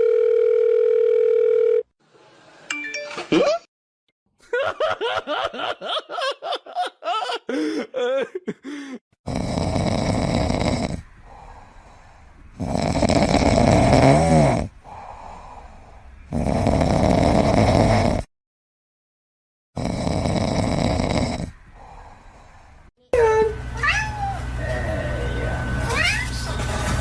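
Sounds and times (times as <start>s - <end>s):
loud snoring: 9.2s - 11.1s, 12.5s - 15.0s, 16.3s - 18.3s, 19.8s - 21.6s.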